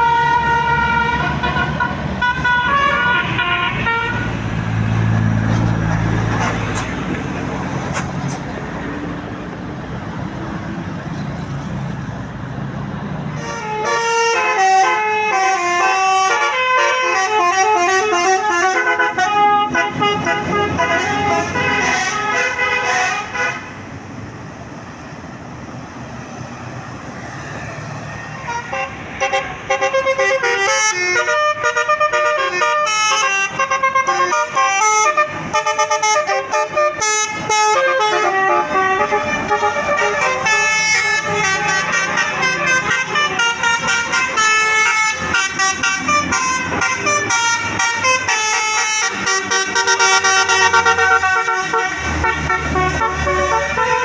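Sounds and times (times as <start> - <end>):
bus air horn melody: 0.0 - 4.4, 13.3 - 23.8, 28.3 - 54.0
bus engine rumble: 0.0 - 54.0
traffic noise: 0.0 - 54.0.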